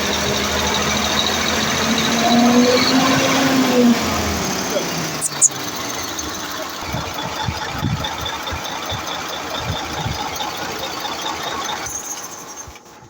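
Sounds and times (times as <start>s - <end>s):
diesel truck engine running: 0.0s - 13.0s.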